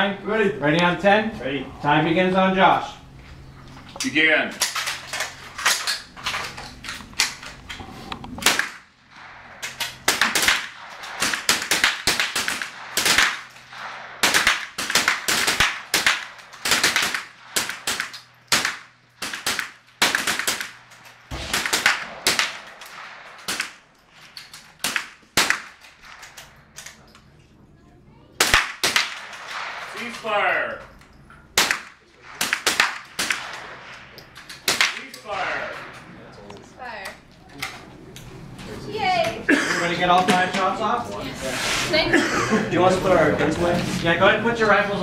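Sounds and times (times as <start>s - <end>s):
rifle shots echoing: 8.4s - 27.4s, 28.4s - 37.3s.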